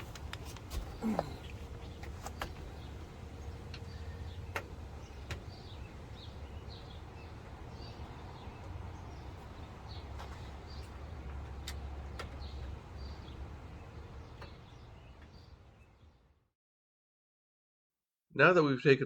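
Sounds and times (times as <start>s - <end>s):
light clicks and taps: 10.1s - 12.8s.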